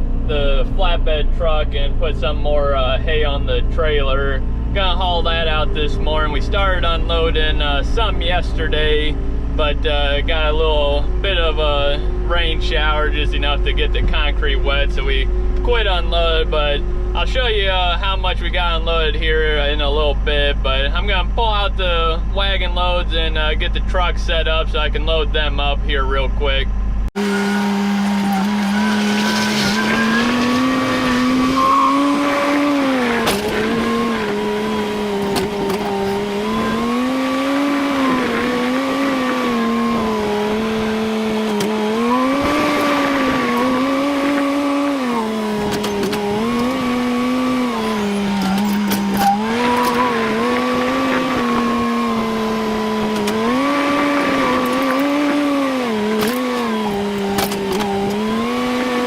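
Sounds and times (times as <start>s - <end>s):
farm vehicle engine under load: 27.2s - 59.0s.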